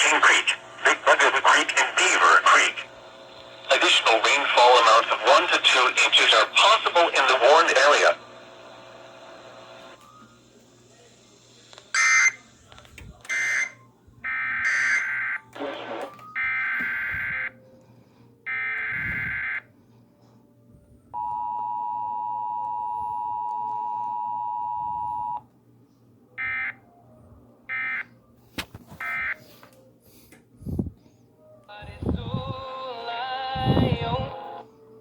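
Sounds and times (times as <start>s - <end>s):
two-tone attention signal: 13.3s - 17.5s.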